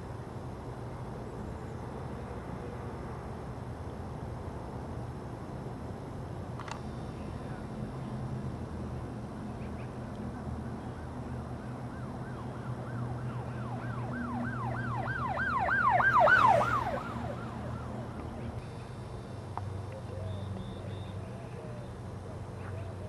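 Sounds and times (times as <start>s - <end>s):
emergency siren yelping: 10.9s - 18.6s.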